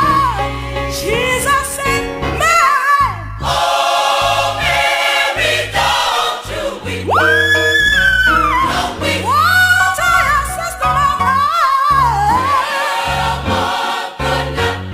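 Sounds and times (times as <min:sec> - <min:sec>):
bass line: 0:00.0 - 0:14.9
held chords: 0:06.4 - 0:11.5.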